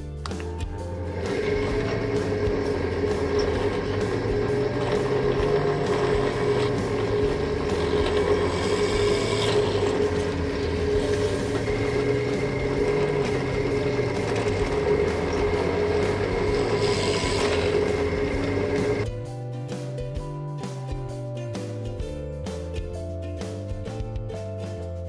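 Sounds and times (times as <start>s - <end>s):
scroll saw cutting wood: 0.9s - 19.1s.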